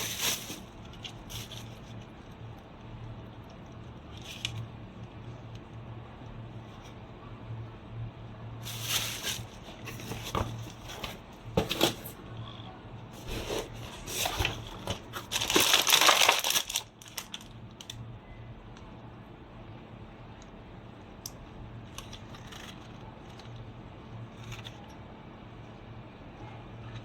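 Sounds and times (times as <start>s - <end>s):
plastic crinkling and rustling: 0.0s - 5.7s, 8.6s - 12.2s, 13.2s - 18.0s, 21.8s - 25.0s.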